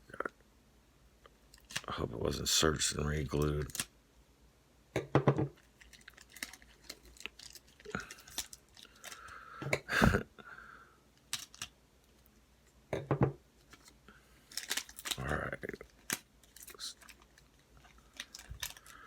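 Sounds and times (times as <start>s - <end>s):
wrapper crinkling and cutting: 1.5s - 1.9s, 3.4s - 3.9s, 5.6s - 9.4s, 11.2s - 12.2s, 13.6s - 19.0s
handling noises: 13.2s - 19.0s.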